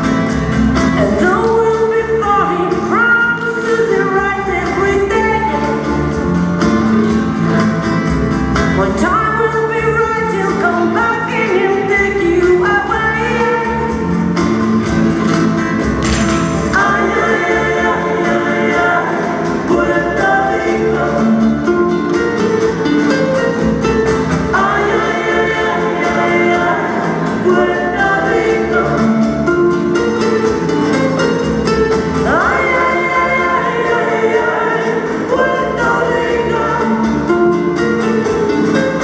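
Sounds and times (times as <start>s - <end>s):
singing over a steady beat: 16.3s - 21.7s, 24.5s - 29.3s, 32.2s - 37.3s.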